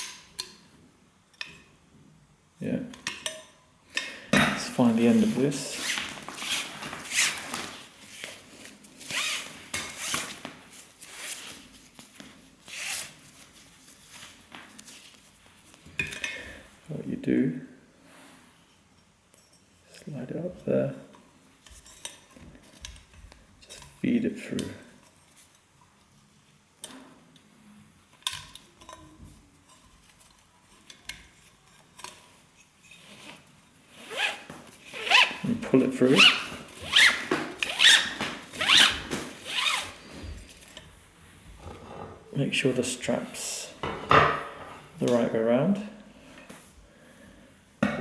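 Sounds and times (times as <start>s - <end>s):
strap pulled through buckle: 5.2s - 15.0s, 34.0s - 35.5s, 36.1s - 40.0s.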